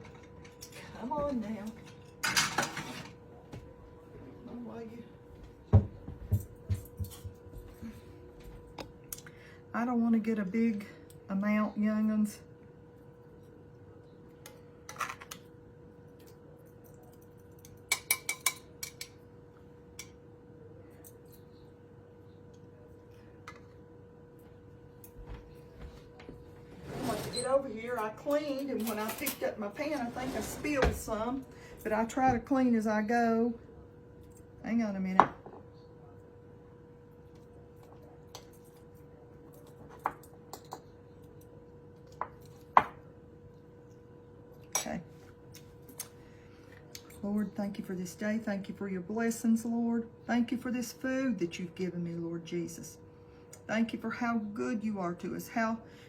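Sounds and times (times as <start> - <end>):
faint steady hum: 0.0 - 56.0
utensil clinking against dishes: 17.1 - 19.2.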